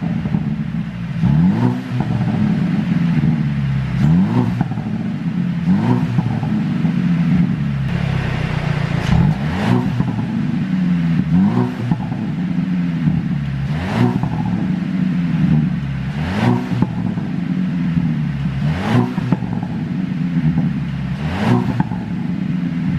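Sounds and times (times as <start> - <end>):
car engine revving: 0.0 - 22.9
exhaust pops and crackles: 7.9 - 10.7.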